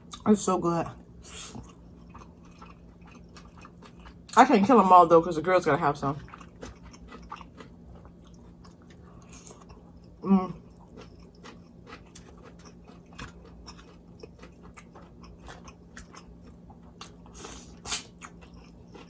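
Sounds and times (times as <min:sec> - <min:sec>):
chewing and lip-smacking: 0:01.5 - 0:04.4, 0:06.1 - 0:19.0.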